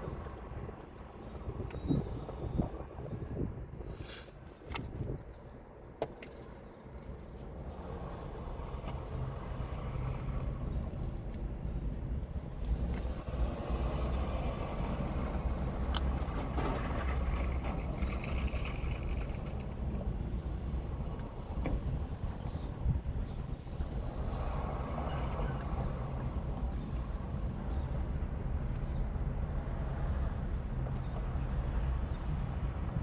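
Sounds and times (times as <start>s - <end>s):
motor vehicle rumbling: 0.0s - 33.0s.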